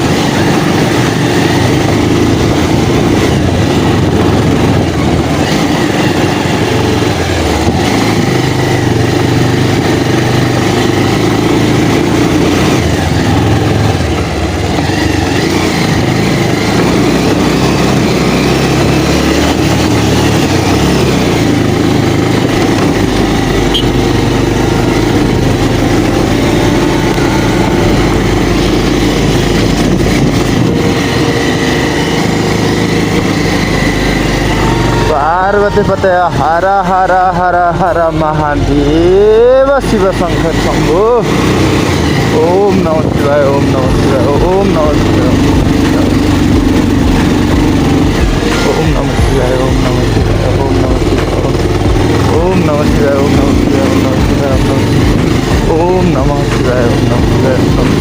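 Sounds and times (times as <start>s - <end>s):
motorcycle engine droning: 0.0s - 58.0s.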